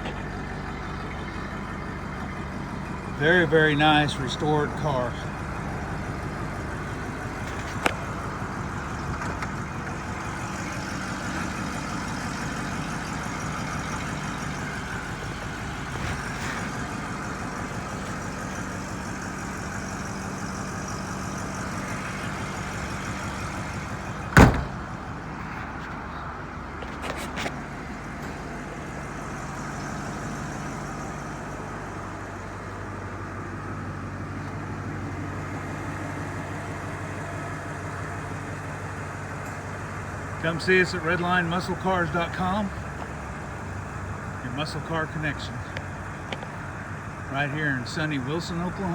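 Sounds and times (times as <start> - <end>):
car engine idling: 0.0 - 48.9
loud thump: 24.3 - 25.0.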